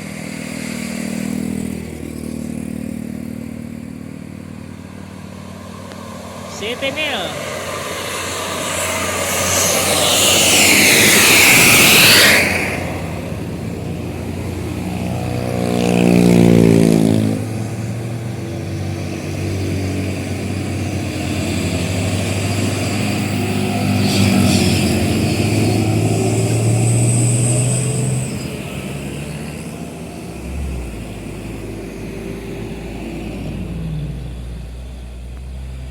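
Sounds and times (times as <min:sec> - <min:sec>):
engine running steadily: 0:00.0 - 0:26.8
diesel engine passing: 0:00.0 - 0:35.9
vehicle rushing past: 0:00.0 - 0:35.9.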